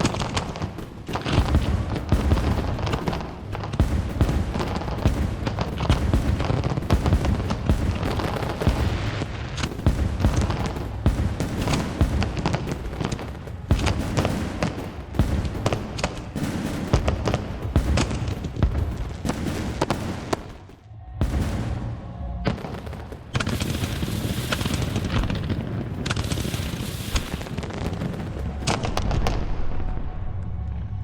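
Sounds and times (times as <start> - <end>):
music playing: 0.0 - 24.2
fireworks bangs and crackling: 0.0 - 30.1.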